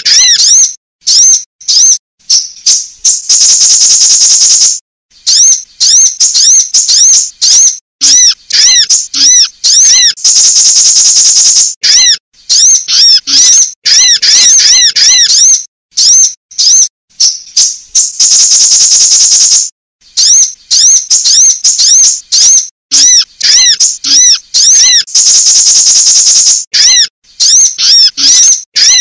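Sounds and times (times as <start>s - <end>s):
dense high bird trill: 0.0s - 29.0s
high-pitched bird chirps: 0.0s - 29.0s.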